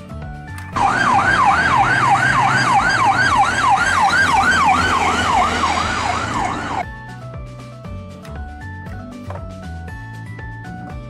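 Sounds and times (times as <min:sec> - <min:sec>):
music: 0:00.0 - 0:11.0
siren yelping: 0:00.8 - 0:06.8.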